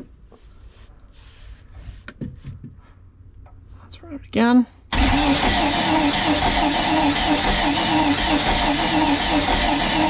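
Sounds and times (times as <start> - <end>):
engine cranking rhythmic chugging: 4.9 - 10.0.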